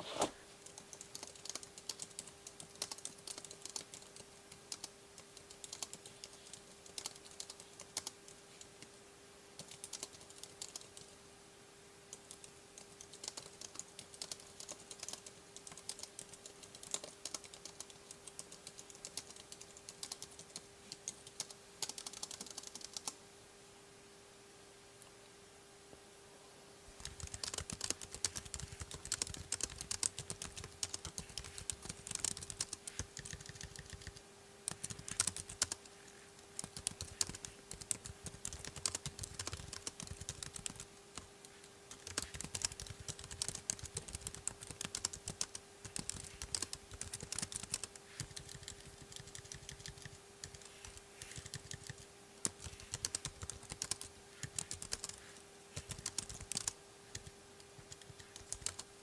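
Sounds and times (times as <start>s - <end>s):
faint steady hum: 0.0s - 59.0s
plastic keyboard keys clicking: 27.0s - 35.8s, 36.6s - 40.8s, 41.9s - 55.2s, 55.8s - 57.3s, 57.9s - 58.8s.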